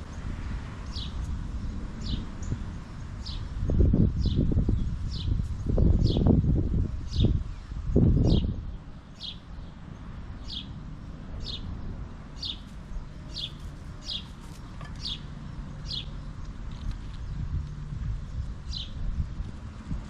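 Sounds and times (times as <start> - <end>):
songbird call: 9.1 - 9.8, 11.4 - 16.3.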